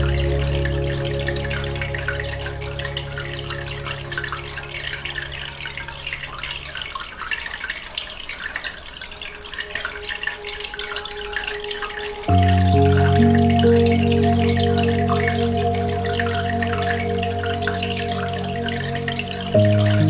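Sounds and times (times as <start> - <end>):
held music chord: 0.0 - 6.2, 12.2 - 20.0
aquarium water bubbling: 0.0 - 20.0.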